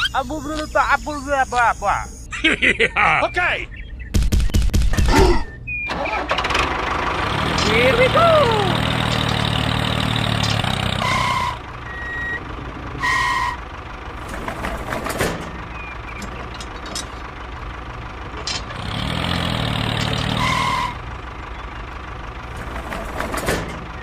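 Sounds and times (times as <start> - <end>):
truck engine running: 5.6 - 24.0.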